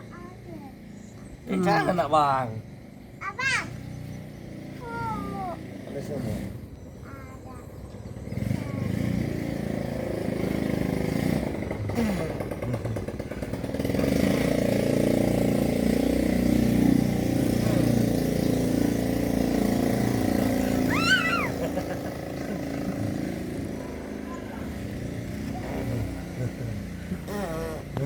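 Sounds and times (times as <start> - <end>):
motorcycle engine running: 8.0 - 28.0.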